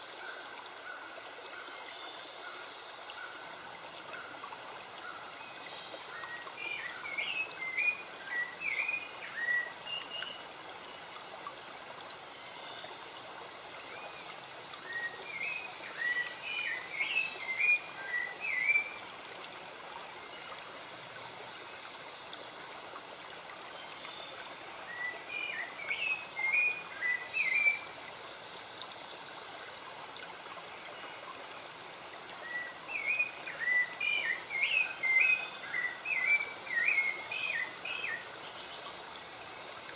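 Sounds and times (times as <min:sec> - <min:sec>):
stream flowing: 0:00.0 - 0:39.9
songbird chirping: 0:05.0 - 0:11.1, 0:13.8 - 0:19.2, 0:23.4 - 0:29.4, 0:32.4 - 0:39.4.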